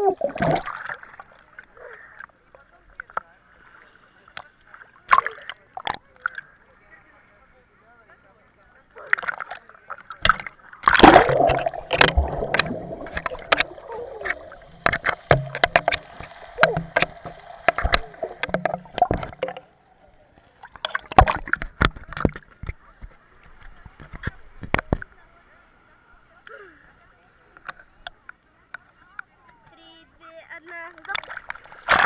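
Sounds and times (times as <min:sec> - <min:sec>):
water sloshing and splashing: 0:00.0 - 0:01.6, 0:10.2 - 0:22.9, 0:30.9 - 0:32.0
sharp knocks and clicks: 0:11.5 - 0:19.6.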